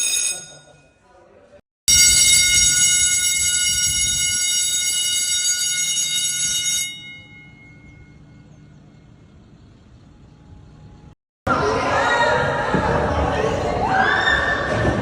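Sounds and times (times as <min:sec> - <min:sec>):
school bell ringing: 0:00.0 - 0:01.0, 0:01.9 - 0:09.2.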